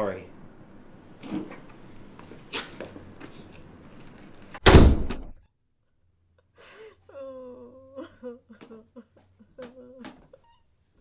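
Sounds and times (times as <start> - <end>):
loud bang: 4.6 - 5.3.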